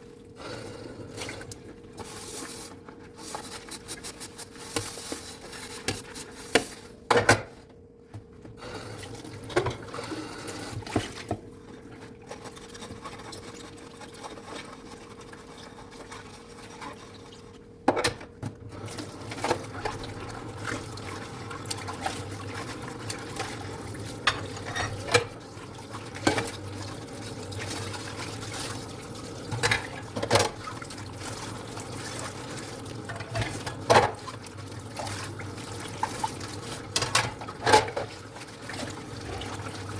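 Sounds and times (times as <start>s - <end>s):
water running and splashing: 18.9s - 24.7s, 25.4s - 39.9s.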